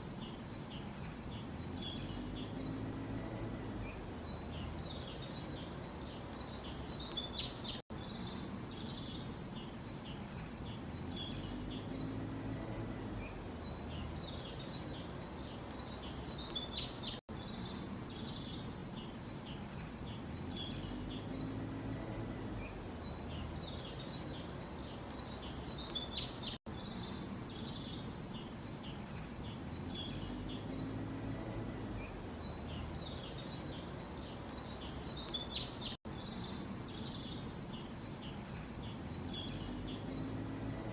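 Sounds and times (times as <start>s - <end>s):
songbirds chirping and twittering: 0.0s - 40.9s.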